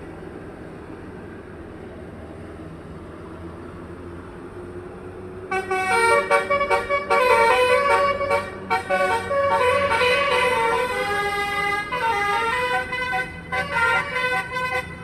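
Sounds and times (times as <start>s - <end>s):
bus engine rumble: 0.0s - 15.0s
musical air horn melody: 5.5s - 15.0s.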